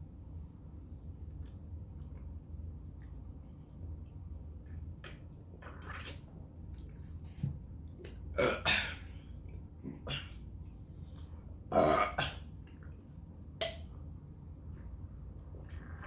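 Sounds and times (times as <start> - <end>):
person burping loudly: 11.7 - 12.4.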